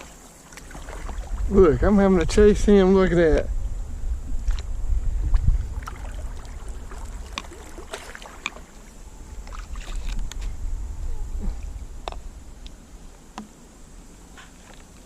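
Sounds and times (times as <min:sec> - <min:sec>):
paddle splashing water: 0:00.0 - 0:01.6, 0:04.3 - 0:10.6
low rumble: 0:09.0 - 0:13.0.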